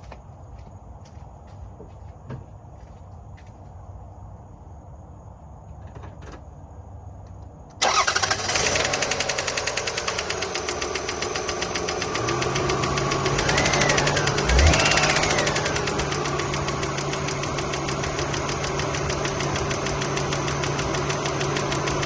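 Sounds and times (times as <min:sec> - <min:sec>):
car engine ticking: 0:07.8 - 0:22.0.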